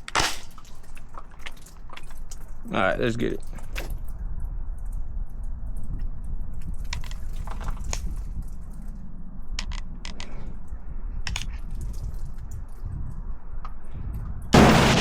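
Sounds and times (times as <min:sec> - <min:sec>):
rifle metallic clicks and rattle: 0:03.4 - 0:09.0, 0:09.6 - 0:13.2
steady low rumble: 0:14.4 - 0:15.0.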